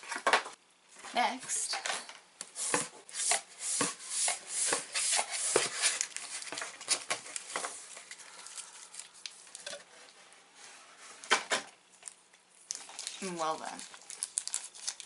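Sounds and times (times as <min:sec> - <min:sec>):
paper and plastic rustling: 0:03.8 - 0:15.0.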